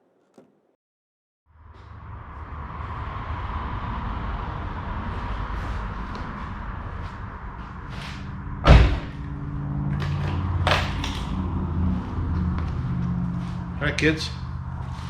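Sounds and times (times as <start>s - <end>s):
minivan door slam: 8.6s - 9.2s.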